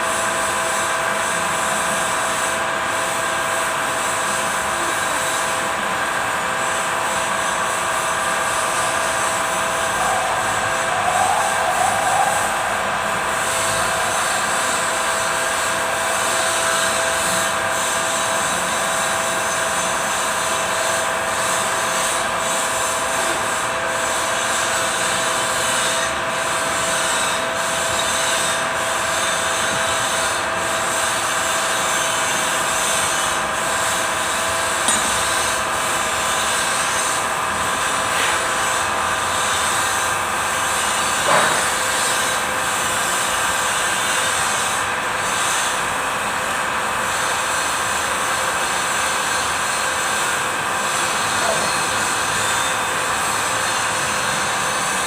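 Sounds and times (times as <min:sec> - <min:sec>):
diesel engine running: 0:00.0 - 0:42.8.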